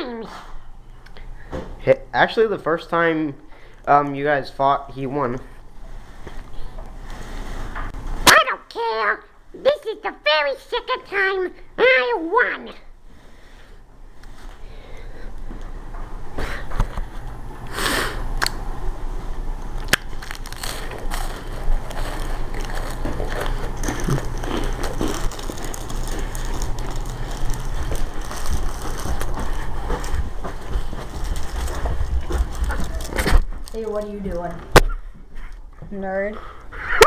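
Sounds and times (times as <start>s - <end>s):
crackling: 16.4s - 35.0s
scuffling and rustling: 20.1s - 34.7s.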